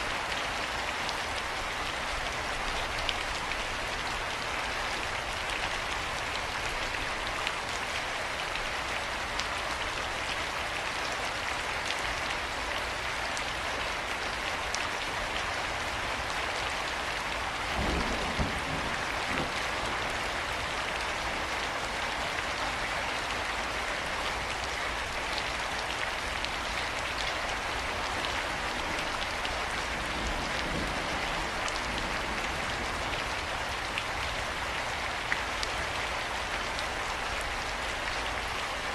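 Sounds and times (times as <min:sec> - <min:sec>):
heavy rain hiss: 0:17.0 - 0:36.6.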